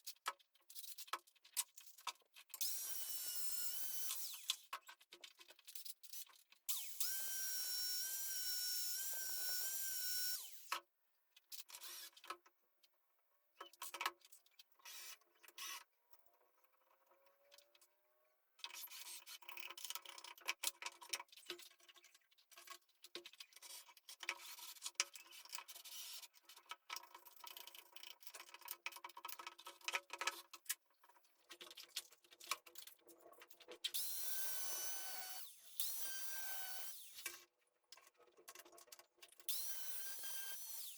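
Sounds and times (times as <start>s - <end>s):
power tool motor whining: 2.6s - 4.6s, 6.7s - 10.7s, 34.0s - 37.3s, 39.5s - 40.9s.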